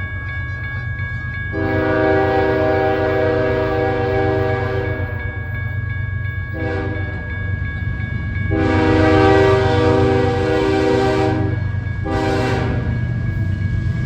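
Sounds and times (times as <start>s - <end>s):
train rumbling: 0.0s - 14.0s
locomotive air horn blasts: 1.6s - 5.2s, 6.6s - 7.1s, 8.5s - 13.0s.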